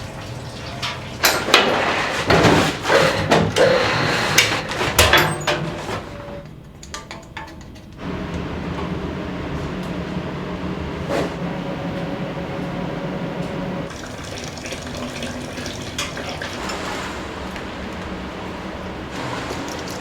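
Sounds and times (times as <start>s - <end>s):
water running from tap: 0.0s - 1.6s, 13.8s - 17.0s
steady low hum: 8.0s - 14.0s.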